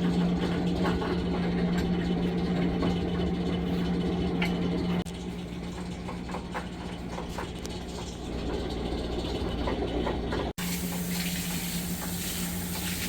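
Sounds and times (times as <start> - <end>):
low mechanical hum: 0.0 - 13.0
water running from tap: 10.6 - 13.0.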